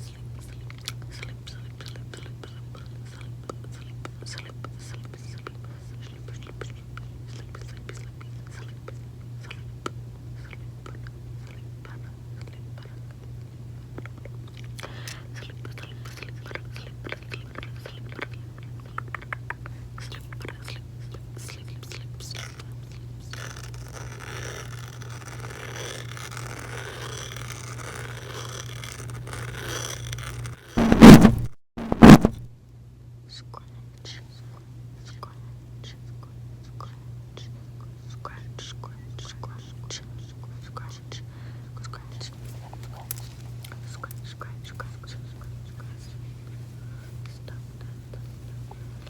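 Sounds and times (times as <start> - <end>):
crackling mouth sounds: 0.1 - 13.3, 13.9 - 32.5, 41.8 - 49.0
gum chewing clicks and smacks: 0.4 - 9.6, 13.9 - 23.0
steady low hum: 30.8 - 32.5.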